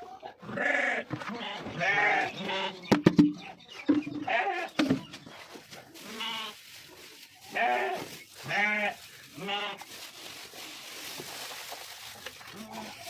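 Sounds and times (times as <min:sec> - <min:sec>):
sheep bleating: 0:00.5 - 0:02.9, 0:07.5 - 0:09.9.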